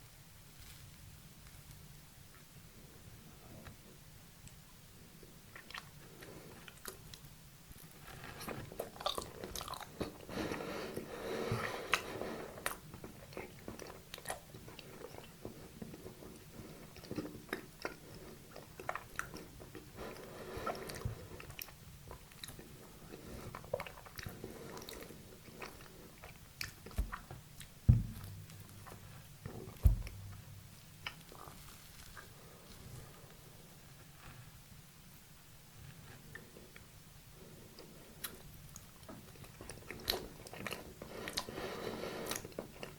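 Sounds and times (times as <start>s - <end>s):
chewing soft cake: 0.7s - 34.6s, 35.9s - 42.9s
loud low thump: 27.9s - 28.5s, 29.8s - 30.6s.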